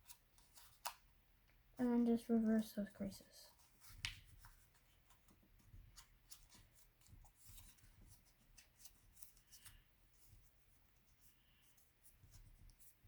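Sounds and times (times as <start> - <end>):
paper sheet crinkling and crackling: 0.0 - 1.1, 3.5 - 10.6.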